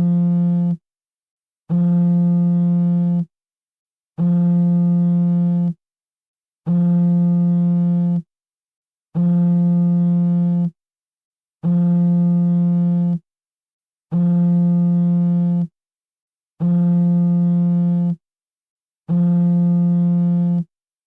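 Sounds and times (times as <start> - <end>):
phone vibration buzz: 19.1 - 20.7.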